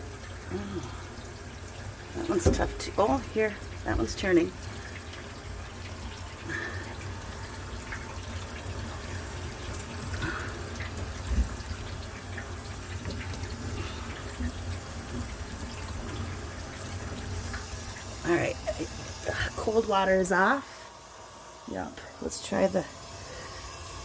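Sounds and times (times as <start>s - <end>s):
faucet running water: 0.0s - 24.0s
low thump: 2.4s - 2.8s.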